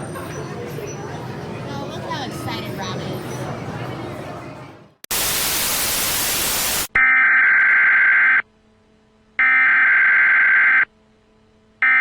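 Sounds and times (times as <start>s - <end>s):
television static hiss: 5.1s - 6.9s.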